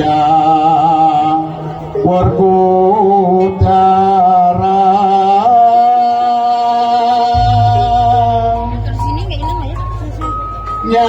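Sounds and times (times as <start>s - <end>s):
low buzzing tone: 7.4s - 11.0s
low drum thuds: 7.4s - 11.0s
wavering melodic note over drone: 7.4s - 11.0s.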